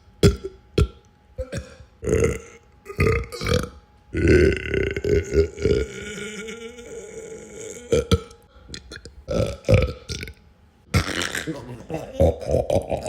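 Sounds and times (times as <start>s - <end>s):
person belching: 0.2s - 13.0s.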